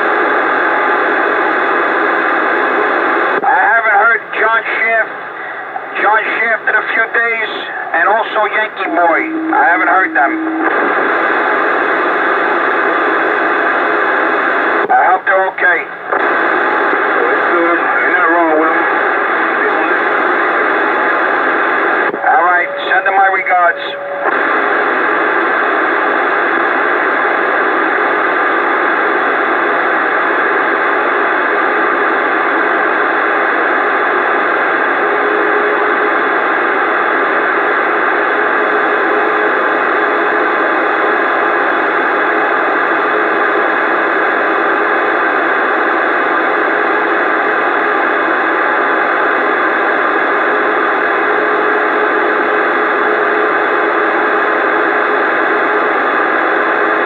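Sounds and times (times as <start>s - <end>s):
radio static hiss: 0.0s - 57.0s
faint steady tones: 4.0s - 28.6s.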